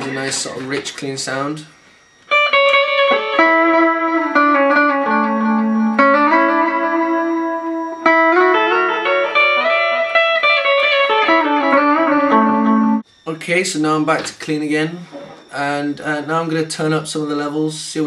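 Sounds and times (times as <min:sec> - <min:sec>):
electric guitar with delay: 0:00.0 - 0:14.1.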